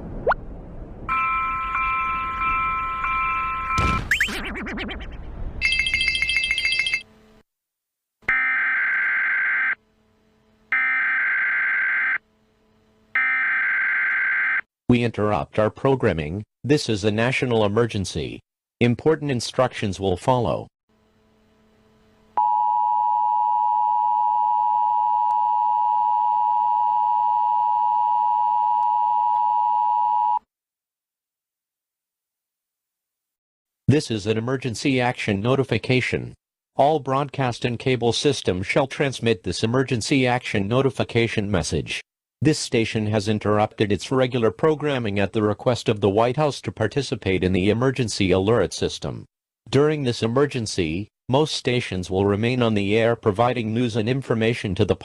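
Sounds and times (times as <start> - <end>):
ringing chime: 1.1 - 3.8, 5.6 - 7.0
steady alarm tone: 1.1 - 4.1, 10.7 - 12.2.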